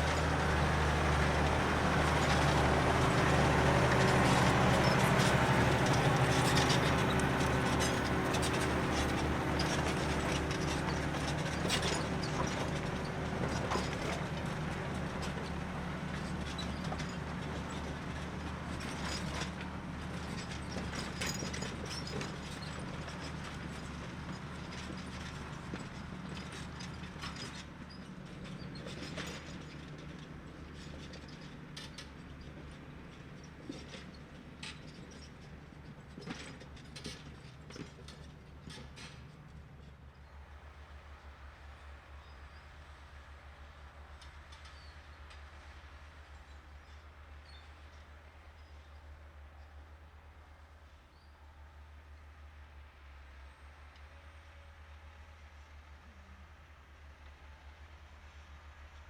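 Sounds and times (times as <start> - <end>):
tractor engine running: 0.0 - 52.5
sharp creaks and clicks: 0.1 - 14.5.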